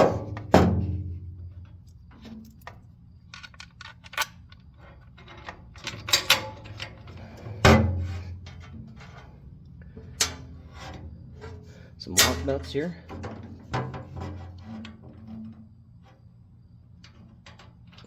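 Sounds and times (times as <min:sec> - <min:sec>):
small metal parts clicking and clinking: 0:02.4 - 0:07.0.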